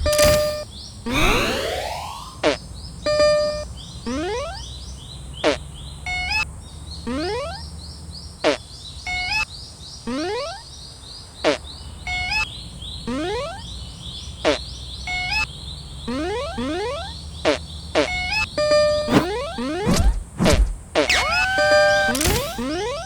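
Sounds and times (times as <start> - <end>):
sharp hit sound effect: 0.0 - 2.4, 19.1 - 23.0
stepped beeps: 0.0 - 2.4, 16.1 - 17.2, 18.0 - 23.0
rising whistle-like sweeps: 1.1 - 2.4.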